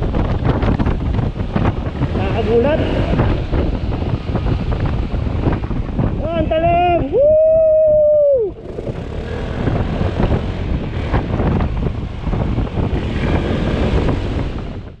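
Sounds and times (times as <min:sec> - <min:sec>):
wind buffeting: 0:00.0 - 0:15.0
scooter running noise: 0:07.8 - 0:14.9.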